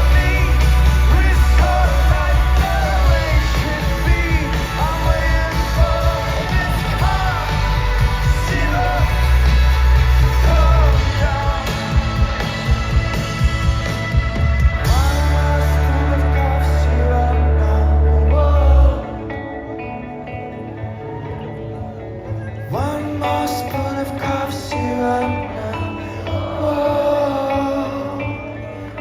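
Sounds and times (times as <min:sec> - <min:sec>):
person singing: 0:00.0 - 0:13.8, 0:14.7 - 0:21.2, 0:21.8 - 0:29.0
rock band playing live: 0:00.0 - 0:29.0.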